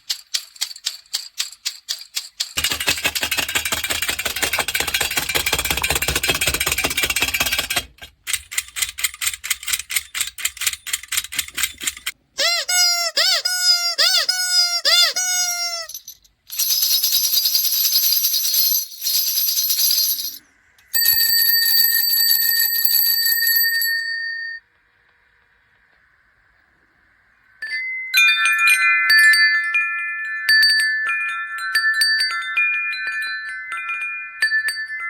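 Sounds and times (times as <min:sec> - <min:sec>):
toy buzzing and rattling: 0:00.0 - 0:23.3
tinkling chime-like tune: 0:15.4 - 0:24.6, 0:27.6 - 0:35.0.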